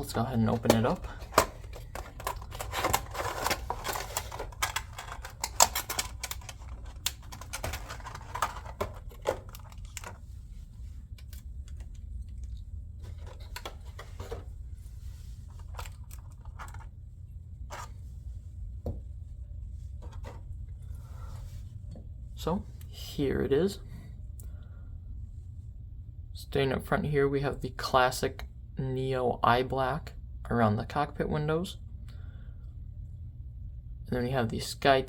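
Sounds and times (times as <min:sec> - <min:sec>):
steady low hum: 0:00.0 - 0:35.0
packaging rustling and tearing: 0:00.5 - 0:10.2.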